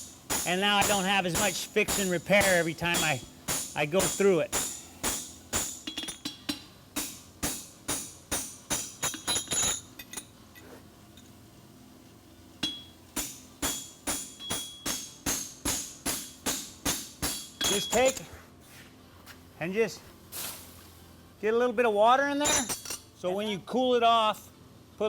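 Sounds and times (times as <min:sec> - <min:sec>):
hammer blows on anvil: 0:00.0 - 0:09.8, 0:12.6 - 0:18.3, 0:22.4 - 0:23.0.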